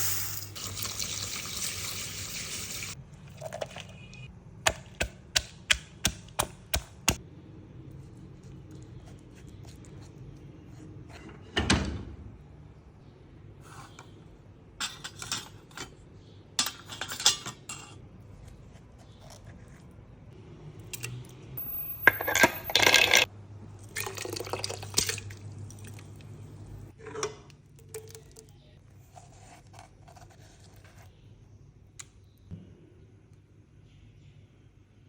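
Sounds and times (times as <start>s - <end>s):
utensils and dishes clattering: 14.8s - 16.0s, 16.6s - 18.0s, 22.0s - 23.3s.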